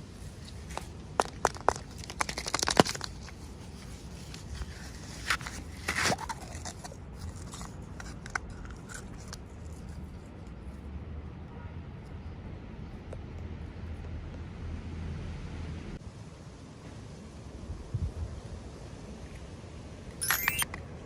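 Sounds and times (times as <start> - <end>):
packaging clicks and crackles: 0.7 - 9.4
packaging tearing: 1.8 - 3.3.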